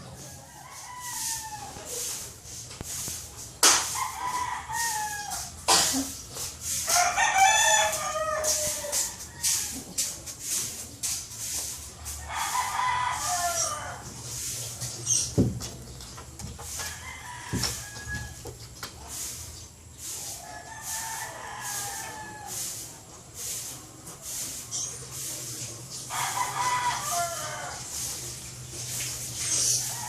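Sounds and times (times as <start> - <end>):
rooster crowing: 0.0 - 2.1, 4.0 - 5.6, 6.8 - 10.0, 12.2 - 14.1, 16.7 - 18.6, 20.4 - 22.8, 26.1 - 27.9, 29.7 - 30.0.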